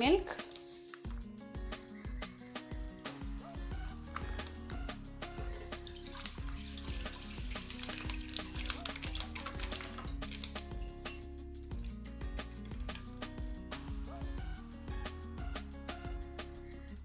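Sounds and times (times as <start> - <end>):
background music with a beat: 0.0 - 17.0
milk pouring into a pot: 3.8 - 10.6.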